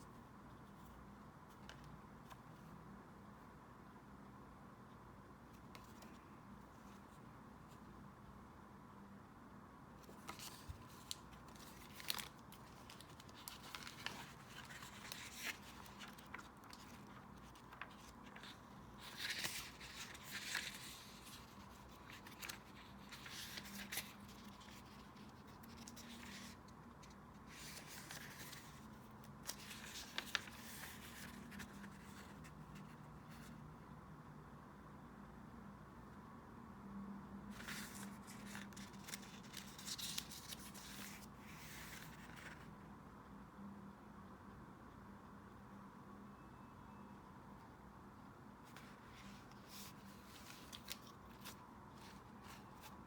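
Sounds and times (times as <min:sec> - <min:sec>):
faint steady hum: 0:00.0 - 0:53.0
paper rustling and scraping: 0:10.0 - 0:33.5, 0:37.5 - 0:42.7, 0:48.7 - 0:53.0.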